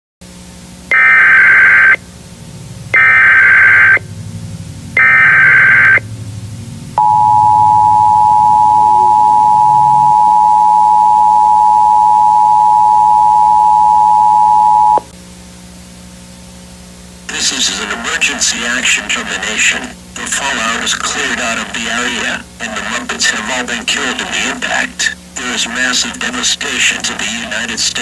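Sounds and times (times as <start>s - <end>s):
digital header code bursts: 3.0s - 4.0s, 5.0s - 6.0s, 17.3s - 28.0s
two-tone attention signal: 3.0s - 4.0s, 5.0s - 6.1s, 7.0s - 15.1s.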